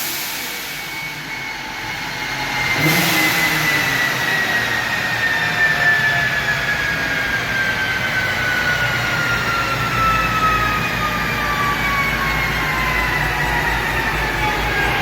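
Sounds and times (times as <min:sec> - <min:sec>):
supercharger whine spinning down: 0:00.0 - 0:15.0
low engine rumble: 0:12.1 - 0:15.0.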